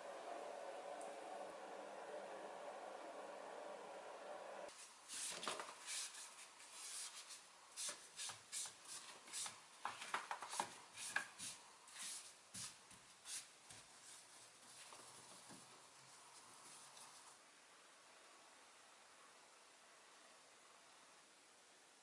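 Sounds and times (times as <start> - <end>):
soft brushing strokes: 4.6 - 9.7, 10.6 - 17.4.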